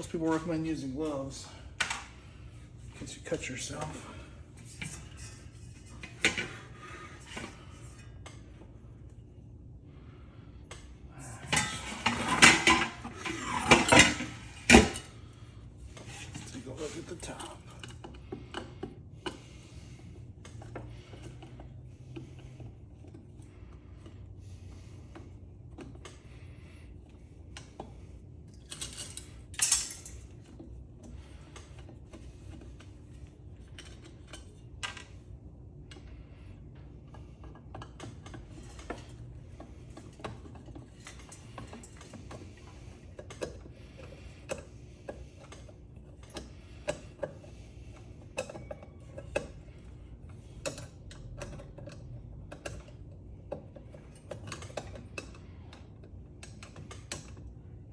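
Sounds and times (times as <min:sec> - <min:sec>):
steady low hum: 0:00.0 - 0:57.9
metal clinks and tool clicks: 0:28.5 - 0:30.6.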